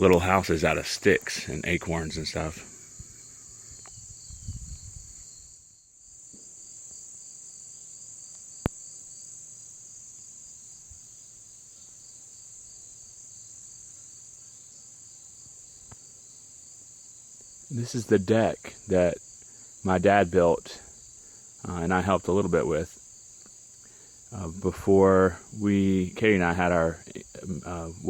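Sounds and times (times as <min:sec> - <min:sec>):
crickets trilling: 0:00.0 - 0:28.0
faint pulsing insect call: 0:00.0 - 0:28.0.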